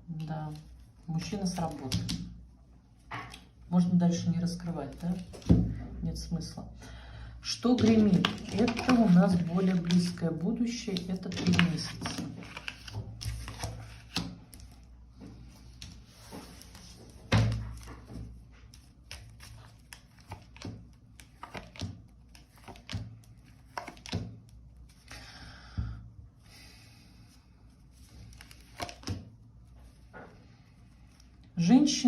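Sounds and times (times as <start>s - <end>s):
card rustling: 7.7s - 25.1s.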